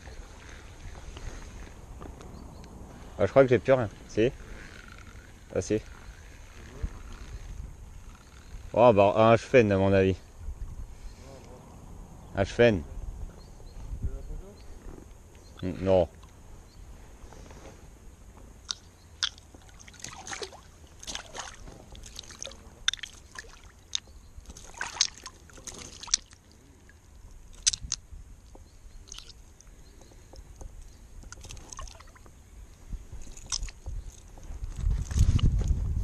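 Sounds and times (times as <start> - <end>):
water sloshing and splashing: 18.7 - 32.4.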